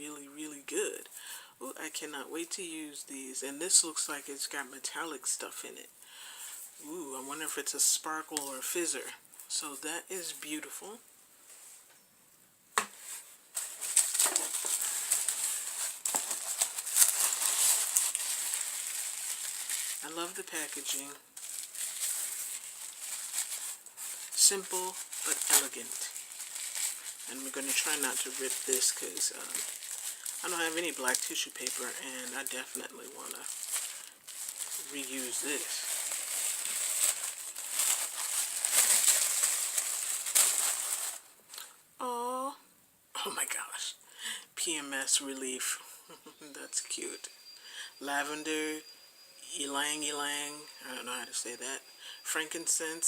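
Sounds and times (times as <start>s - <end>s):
gift packaging rustling: 12.9s - 41.8s.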